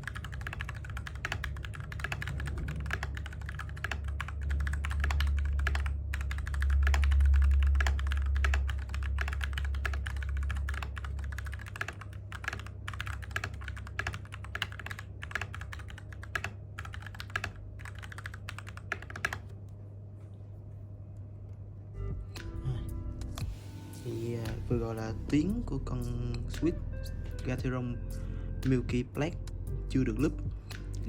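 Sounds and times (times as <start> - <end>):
low hum: 0.0 - 16.0, 19.5 - 31.0
fast typing on mechanical keyboard: 0.0 - 19.5.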